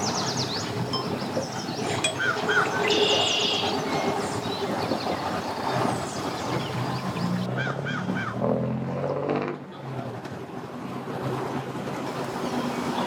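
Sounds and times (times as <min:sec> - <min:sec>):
small birds chirping: 0:00.0 - 0:07.5
wind: 0:00.0 - 0:13.0.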